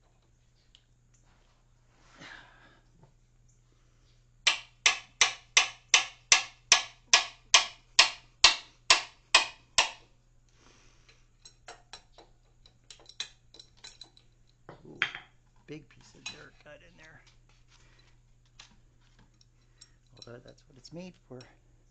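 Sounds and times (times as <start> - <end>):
hammer striking metal: 4.5 - 10.0.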